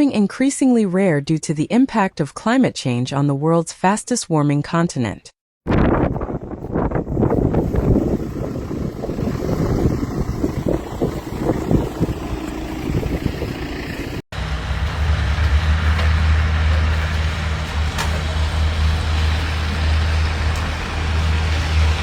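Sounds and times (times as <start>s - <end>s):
road and wind hiss: 6.1s - 22.0s
vehicle engine drone: 6.1s - 22.0s.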